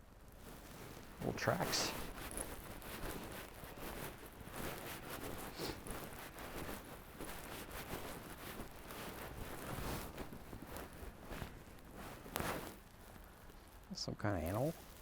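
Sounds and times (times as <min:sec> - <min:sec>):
footsteps in snow: 0:00.3 - 0:15.0.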